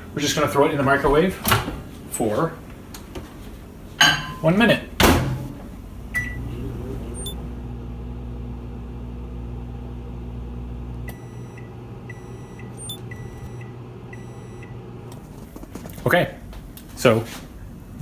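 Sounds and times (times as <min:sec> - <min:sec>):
microwave oven humming: 0:00.0 - 0:18.0
microwave end-of-cycle beeps: 0:05.2 - 0:15.2
microwave keypad beep: 0:06.1 - 0:06.5, 0:07.1 - 0:07.4, 0:11.1 - 0:14.9.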